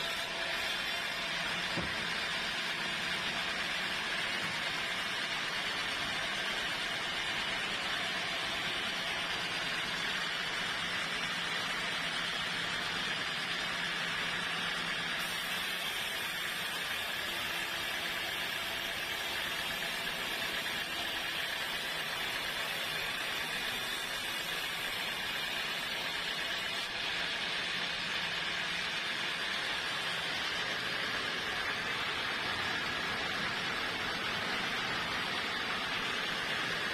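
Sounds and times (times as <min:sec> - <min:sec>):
sawmill machinery running: 0:00.0 - 0:36.9.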